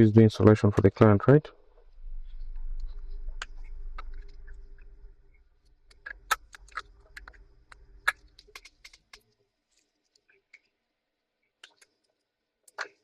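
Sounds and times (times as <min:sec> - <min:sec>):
faint steady hum: 0:00.0 - 0:13.0
low rumbling handling noise: 0:01.6 - 0:06.1.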